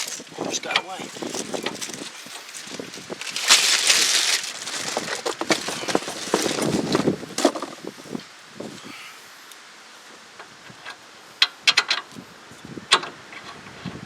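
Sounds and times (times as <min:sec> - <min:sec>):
parts clattering: 0:00.0 - 0:07.9
rustling scrape: 0:00.0 - 0:08.2.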